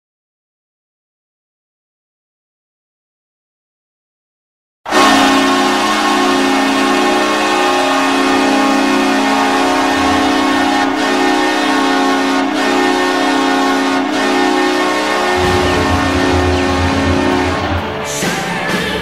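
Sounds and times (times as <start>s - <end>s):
goal horn blast: 4.9s - 18.3s
low bass beat: 15.4s - 18.1s
low pulsing rumble: 15.4s - 18.1s.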